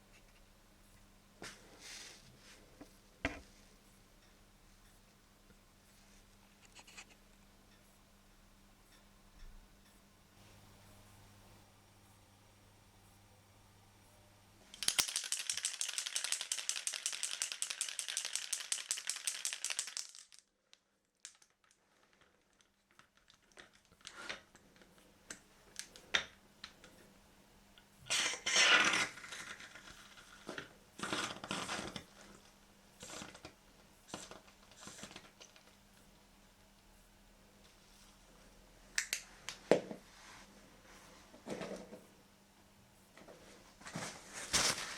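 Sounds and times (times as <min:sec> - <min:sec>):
aerosol can rattling when shaken: 0:14.8 - 0:20.5.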